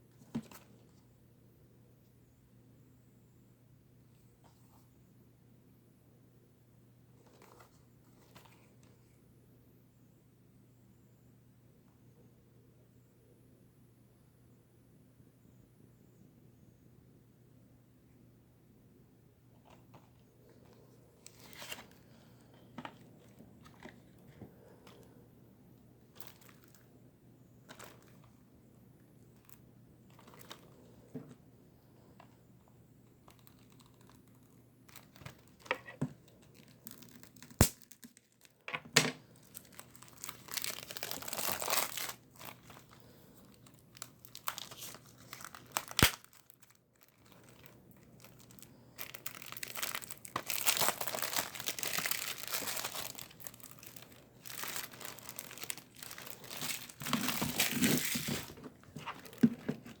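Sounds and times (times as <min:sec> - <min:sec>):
plastic wrap tearing and crinkling: 0:21.2 - 0:22.0, 0:26.2 - 0:26.8, 0:29.4 - 0:30.8, 0:33.3 - 0:38.6, 0:39.4 - 1:00.0.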